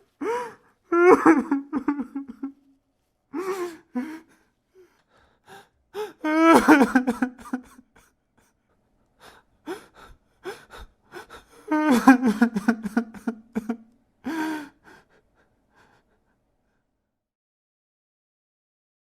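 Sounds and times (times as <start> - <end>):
man sobbing: 0.2 - 2.6, 3.3 - 5.0, 6.0 - 8.1, 9.7 - 14.8.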